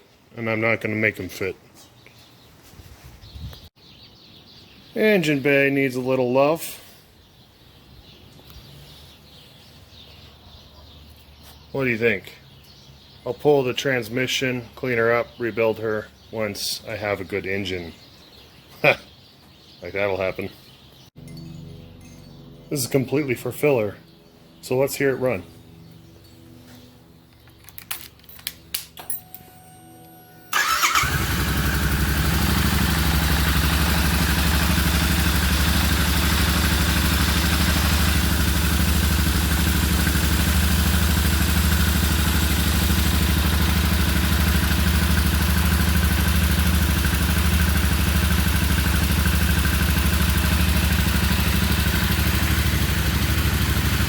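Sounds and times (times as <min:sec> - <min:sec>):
car engine starting and idling: 0:29.6 - 0:54.0.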